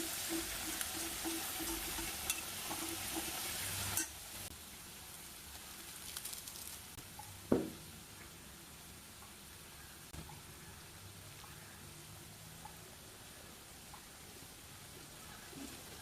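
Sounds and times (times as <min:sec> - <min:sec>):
food sizzling in frying pan: 0:00.0 - 0:07.0.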